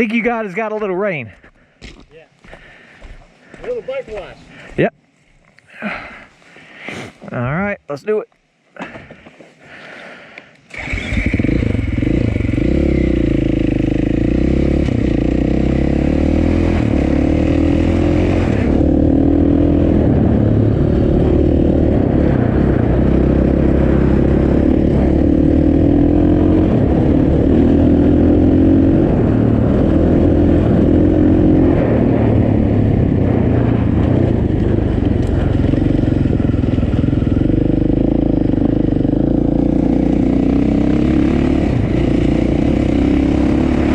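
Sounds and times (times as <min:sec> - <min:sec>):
motorcycle engine revving: 0:10.7 - 0:43.9.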